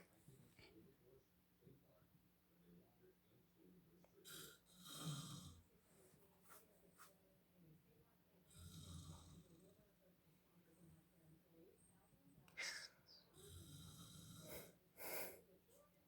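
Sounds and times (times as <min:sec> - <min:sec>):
man snoring: 0:04.3 - 0:05.6, 0:13.4 - 0:14.7.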